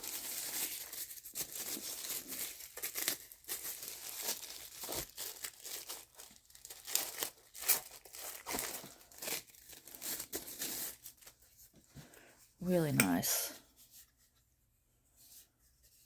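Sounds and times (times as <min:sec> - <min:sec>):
plastic packaging crinkling: 0:00.0 - 0:11.7.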